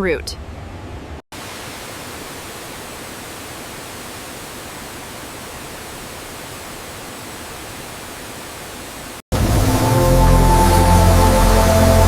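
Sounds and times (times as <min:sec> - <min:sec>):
steady hiss: 0:01.4 - 0:10.0.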